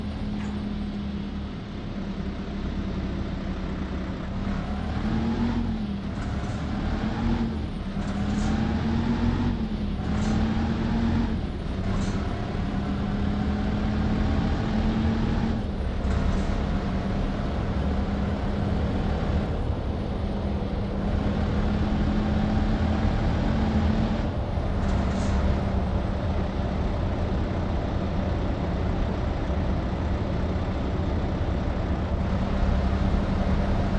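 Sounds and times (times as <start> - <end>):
truck diesel engine droning: 0.0 - 33.9.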